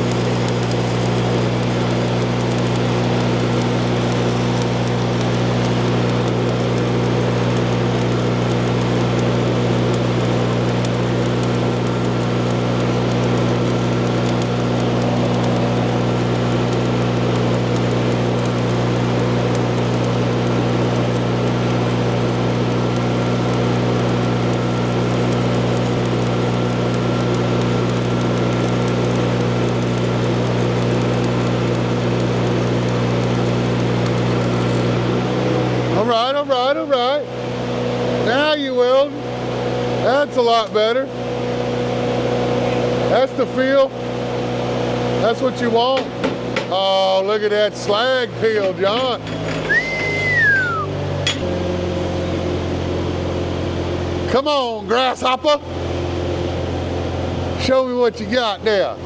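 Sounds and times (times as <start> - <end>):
steady low hum: 0.0 - 35.2
welding arc crackling: 0.0 - 35.2.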